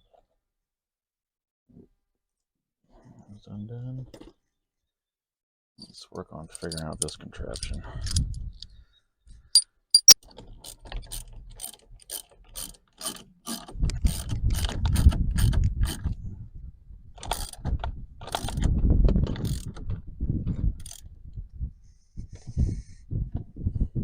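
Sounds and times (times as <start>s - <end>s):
ratchet wrench clicking: 10.0s - 10.2s
sharp metal clicks: 10.0s - 10.2s.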